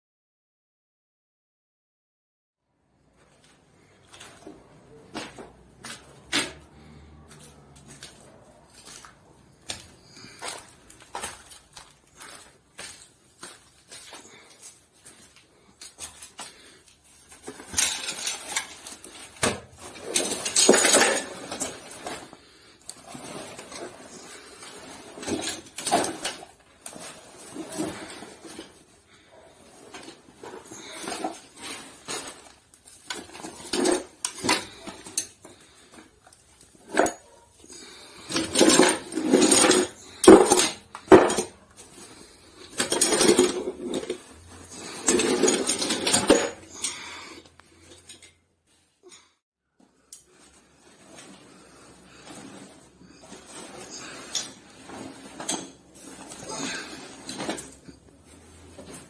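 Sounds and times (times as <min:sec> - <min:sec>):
gear rustling: 0:05.2 - 0:48.8
metal cookware clinking: 0:20.1 - 0:21.7.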